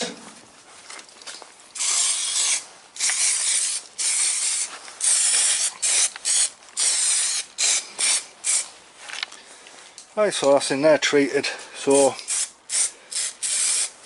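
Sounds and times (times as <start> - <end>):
spray can hissing bursts: 1.8 - 8.7, 11.9 - 14.0.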